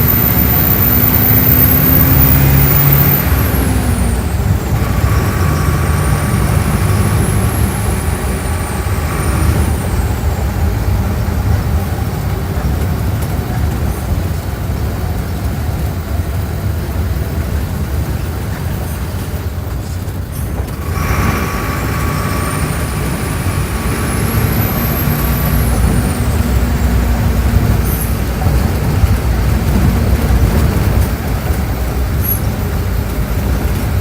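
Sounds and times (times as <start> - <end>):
bus diesel engine: 0.0 - 34.0
high engine whine: 0.0 - 34.0
road rumble: 0.0 - 34.0.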